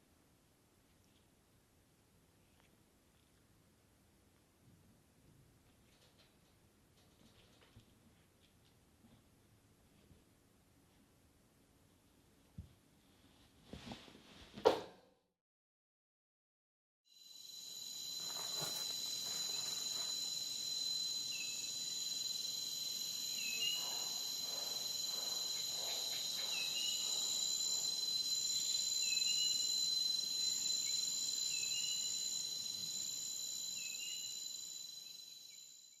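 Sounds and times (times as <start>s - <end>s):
insects chirping: 17.1s - 36.0s.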